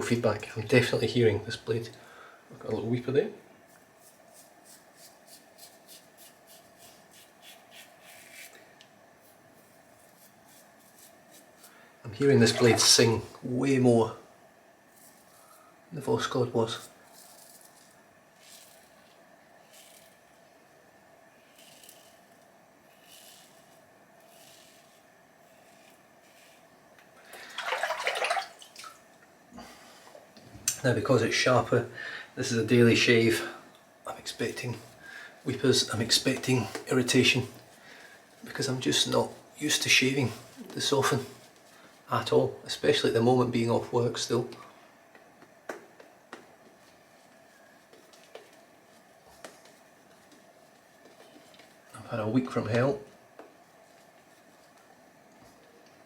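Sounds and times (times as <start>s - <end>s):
razor scraping stubble: 3.7s - 8.5s, 9.6s - 11.7s, 19.6s - 20.2s, 21.4s - 26.7s
running tap water: 12.4s - 13.1s, 27.3s - 29.0s.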